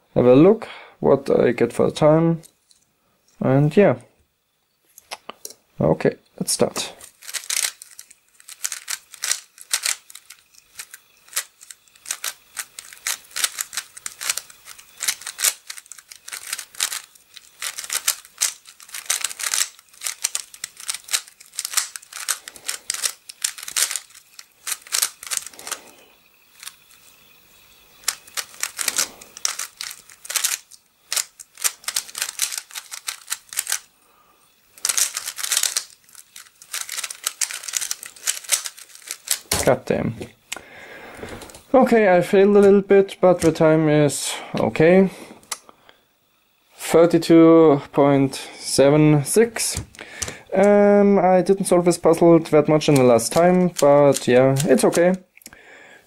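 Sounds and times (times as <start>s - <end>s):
plastic puzzle cube clicking: 7.0s - 25.8s, 26.5s - 27.0s, 28.0s - 33.9s, 34.8s - 39.6s, 52.9s - 55.2s.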